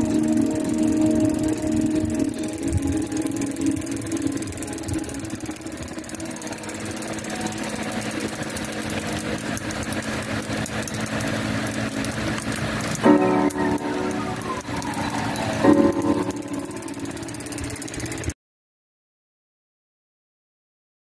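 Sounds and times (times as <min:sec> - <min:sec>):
engine running: 0:00.0 - 0:18.4
rapid engine ticking: 0:00.0 - 0:18.4.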